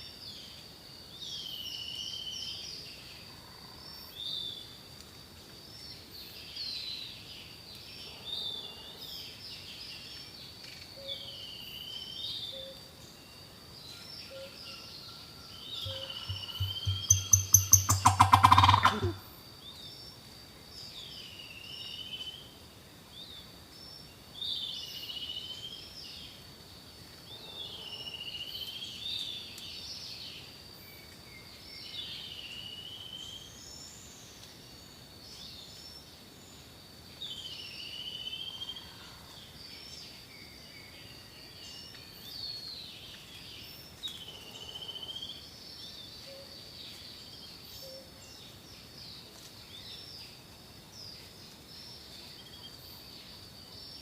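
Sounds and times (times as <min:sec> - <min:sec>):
whistled bird calls: 0:14.2 - 0:19.2
high-pitched insect drone: 0:15.5 - 0:19.2.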